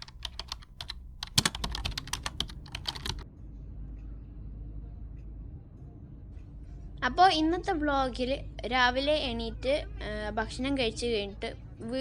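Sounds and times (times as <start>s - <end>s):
keyboard typing clicks: 0.0s - 3.2s
low steady hum: 0.0s - 3.2s.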